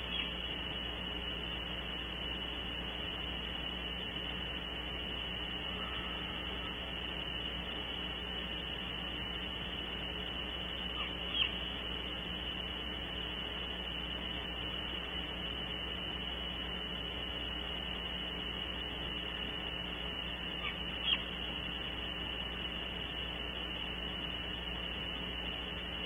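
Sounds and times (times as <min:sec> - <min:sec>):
owlets chirping: 0:00.0 - 0:00.6, 0:10.9 - 0:11.8, 0:20.5 - 0:21.6
steady high-pitched tone with hiss: 0:00.0 - 0:26.0.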